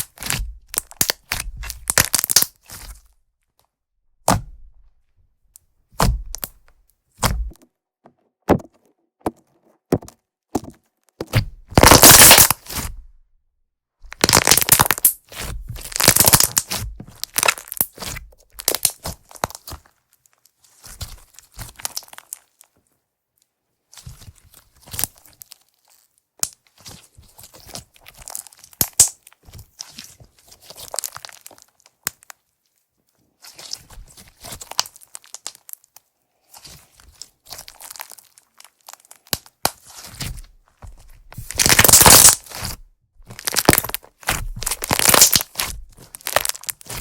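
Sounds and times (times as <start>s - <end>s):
slime crunching and crackling: 0.0s - 3.1s, 6.0s - 7.6s, 11.3s - 13.0s, 14.1s - 22.7s, 26.7s - 32.4s, 33.4s - 47.0s.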